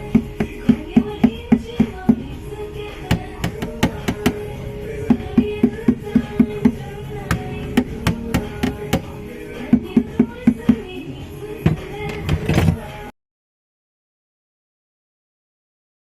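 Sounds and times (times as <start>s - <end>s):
background music: 0.0s - 13.1s
knuckles knocking on car panel: 0.1s - 2.3s, 3.1s - 10.8s.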